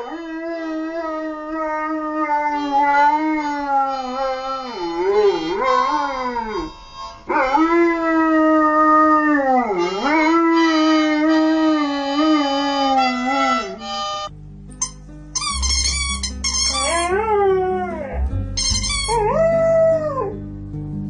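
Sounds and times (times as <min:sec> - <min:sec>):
dog howling: 0:00.0 - 0:13.8.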